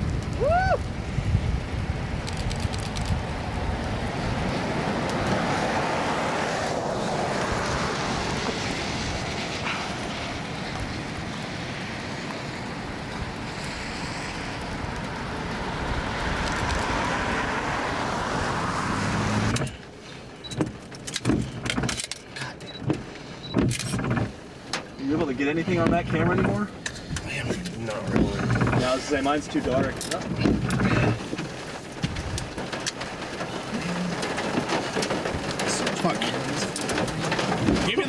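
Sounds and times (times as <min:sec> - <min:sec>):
wind and road noise: 0:00.0 - 0:38.0
scattered clicks and knocks: 0:20.4 - 0:38.0.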